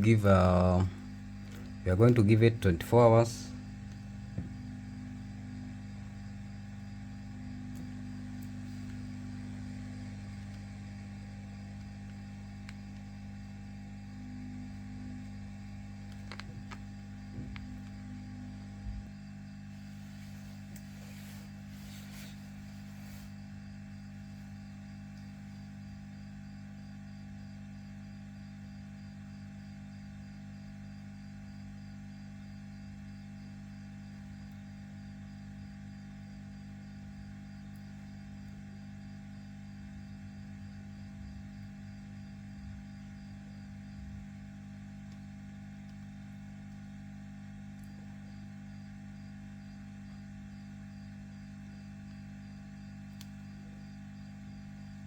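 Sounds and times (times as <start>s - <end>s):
low electrical hum: 0.0s - 55.0s
faint clicks: 53.1s - 53.4s.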